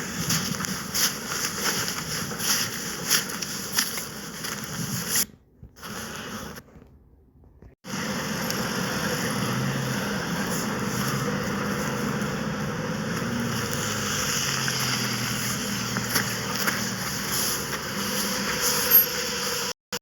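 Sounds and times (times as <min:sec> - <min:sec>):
engine humming: 0:07.8 - 0:19.8.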